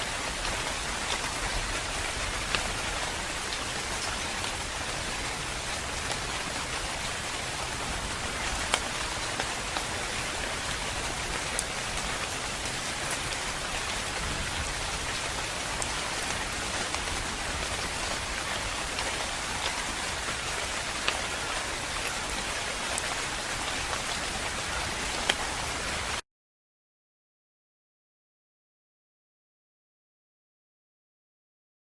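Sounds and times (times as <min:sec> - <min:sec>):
steady rain falling: 0:00.0 - 0:26.2
raindrop ticks: 0:07.4 - 0:23.1, 0:23.9 - 0:26.2.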